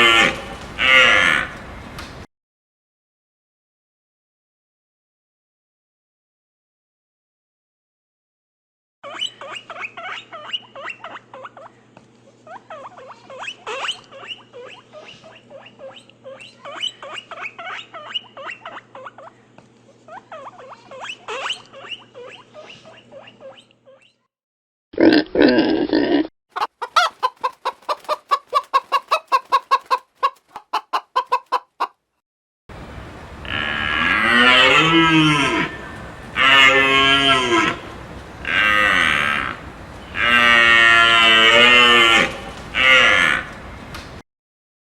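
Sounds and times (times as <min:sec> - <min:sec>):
cattle mooing: 0:00.0 - 0:01.6, 0:33.4 - 0:43.6
chickens clucking: 0:00.0 - 0:02.1, 0:26.5 - 0:32.0.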